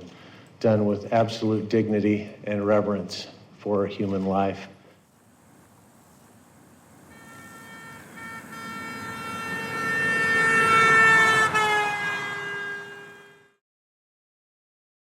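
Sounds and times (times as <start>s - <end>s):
vehicle horn honking: 7.1s - 13.6s.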